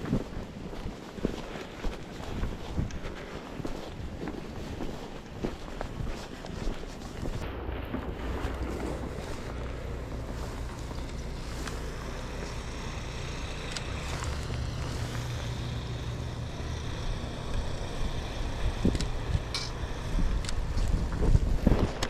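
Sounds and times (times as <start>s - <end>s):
wind rumble: 0.0s - 22.0s
city traffic: 8.2s - 22.0s.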